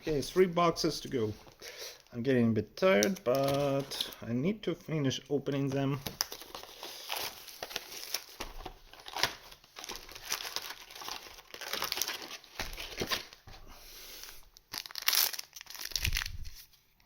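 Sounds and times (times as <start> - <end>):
wrappers crinkling and tearing: 6.0 - 13.4, 14.2 - 16.8.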